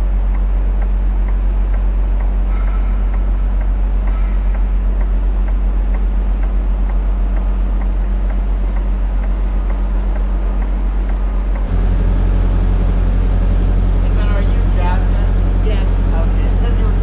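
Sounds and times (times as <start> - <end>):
diesel truck engine idling: 8.0 - 17.0.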